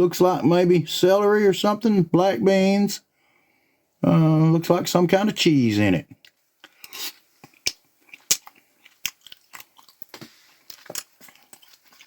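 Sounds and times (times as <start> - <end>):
mouth clicks and smacking: 6.1 - 12.0
person chewing: 6.2 - 12.0.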